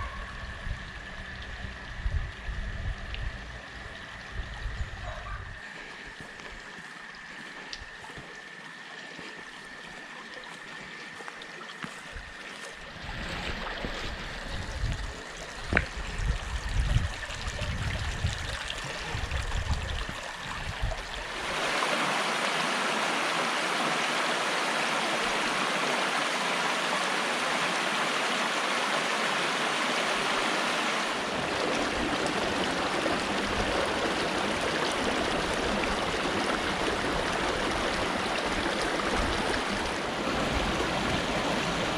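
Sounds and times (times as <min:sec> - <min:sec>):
waterfall and rapids rushing: 0:21.3 - 0:41.9.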